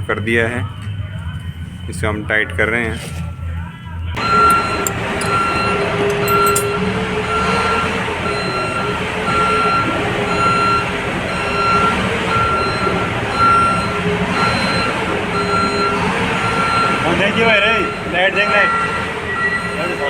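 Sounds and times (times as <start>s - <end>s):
engine running: 0.0s - 20.0s
reversing alarm beeping: 4.2s - 20.0s.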